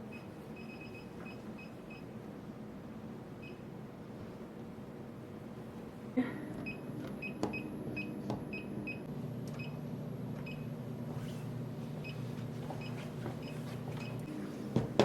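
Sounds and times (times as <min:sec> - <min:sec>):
vending machine beeping: 0:00.0 - 0:02.2, 0:06.6 - 0:10.7, 0:12.0 - 0:14.4.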